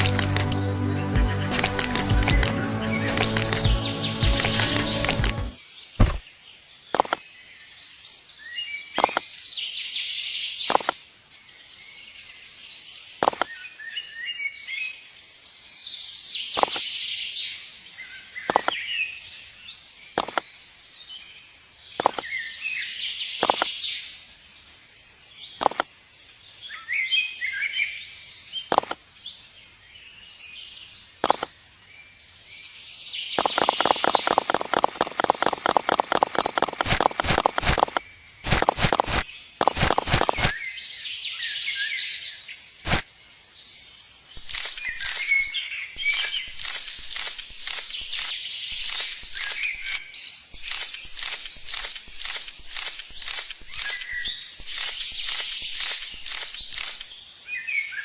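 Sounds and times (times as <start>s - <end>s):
birds chirping: 0.0s - 14.6s, 33.0s - 43.2s, 44.2s - 58.0s
sharp knock: 6.0s - 6.2s
fast run of taps: 33.4s - 40.5s.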